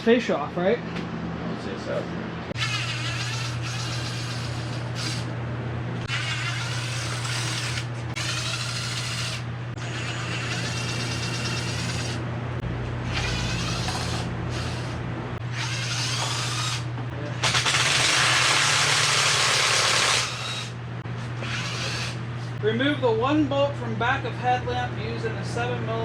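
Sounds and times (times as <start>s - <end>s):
steady low hum: 0.0s - 26.0s
power tool driving fasteners: 2.6s - 5.3s, 6.1s - 12.2s, 13.1s - 20.8s, 21.4s - 22.2s.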